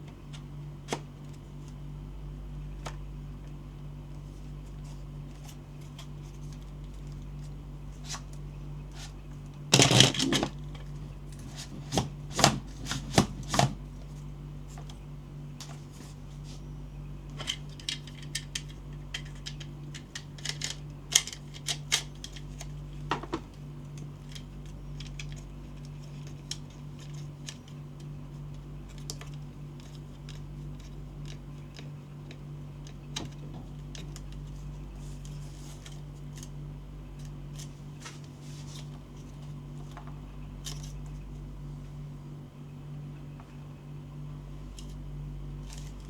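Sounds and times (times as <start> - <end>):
steady low hum: 0.0 - 46.0
plastic parts clicking and snapping: 5.4 - 13.8, 17.3 - 36.6.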